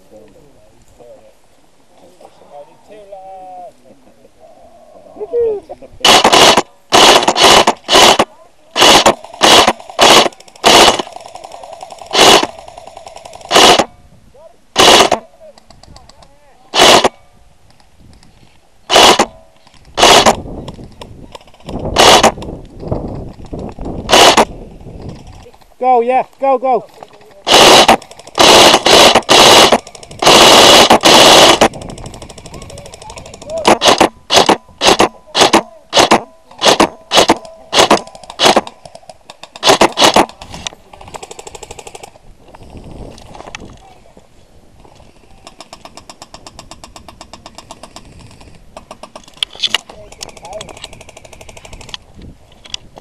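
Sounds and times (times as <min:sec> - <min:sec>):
airsoft gun bursts: 0:06.0 - 0:13.9, 0:14.8 - 0:15.3, 0:16.7 - 0:17.2, 0:18.9 - 0:20.4, 0:21.3 - 0:22.5, 0:24.1 - 0:25.4, 0:27.4 - 0:42.1
rapid ticks: 0:06.1 - 0:13.9, 0:27.0 - 0:43.6, 0:45.4 - 0:52.0.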